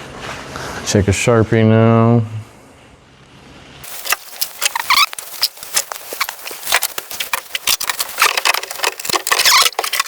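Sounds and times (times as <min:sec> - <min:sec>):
marker squeaks: 0:03.9 - 0:10.0.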